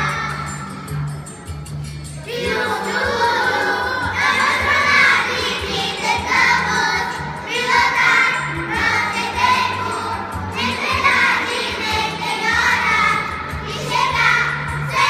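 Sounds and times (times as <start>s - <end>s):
children singing: 0.0s - 1.2s, 2.2s - 15.0s
musical accompaniment: 0.0s - 15.0s.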